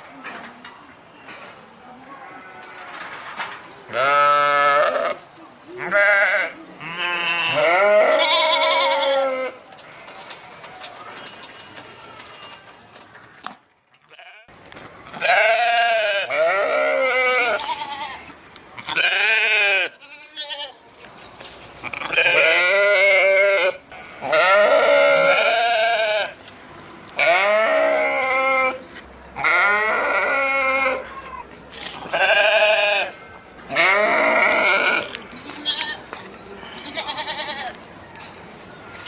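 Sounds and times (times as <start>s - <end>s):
sheep bleating: 3.9s - 5.2s, 5.8s - 10.2s, 15.2s - 20.8s, 21.8s - 26.4s, 27.2s - 28.8s, 29.4s - 31.4s, 32.0s - 36.0s, 36.8s - 37.8s.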